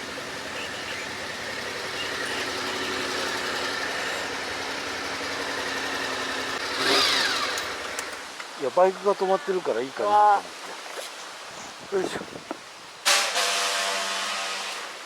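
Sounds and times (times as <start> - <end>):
vehicle engine running at low revs: 0.0 - 7.9.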